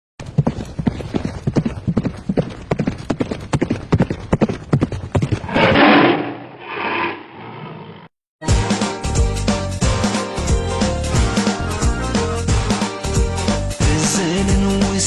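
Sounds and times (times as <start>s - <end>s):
horse hoofbeats: 0.2s - 5.8s.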